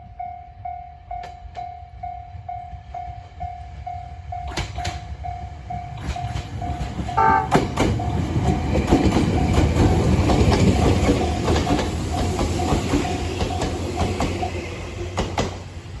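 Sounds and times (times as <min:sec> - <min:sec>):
crossing warning bell dinging: 0:00.0 - 0:14.6
train wheels clacking on rails: 0:02.6 - 0:16.0.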